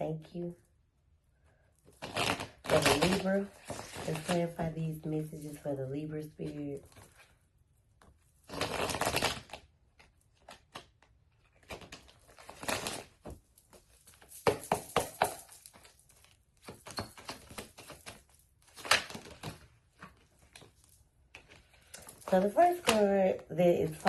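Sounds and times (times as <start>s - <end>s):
cards being shuffled: 8.0s - 24.0s.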